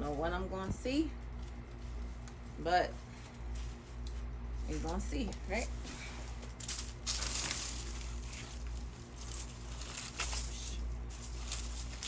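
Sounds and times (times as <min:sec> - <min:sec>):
hands rummaging through dry soil: 0:05.7 - 0:12.0.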